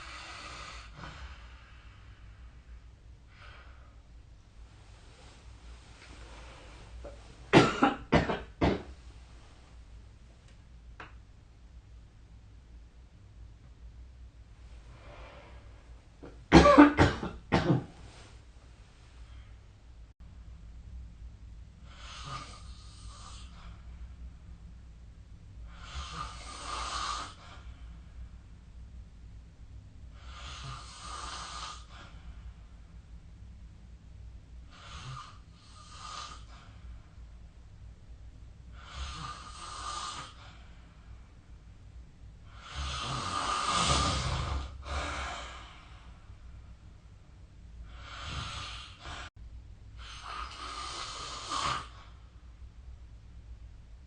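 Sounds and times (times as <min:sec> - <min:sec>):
person snoring: 0:38.8 - 0:40.4, 0:42.5 - 0:45.9, 0:50.0 - 0:52.0.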